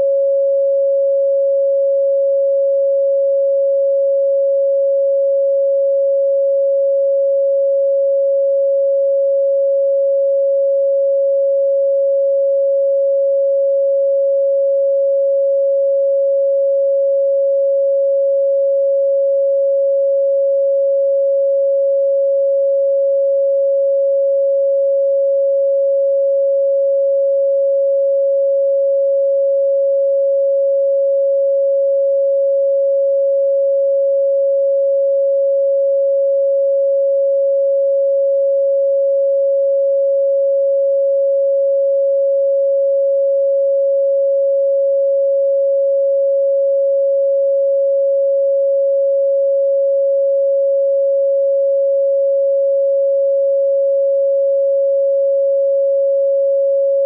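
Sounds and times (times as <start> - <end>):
steady sine tone: 0.0 - 57.0.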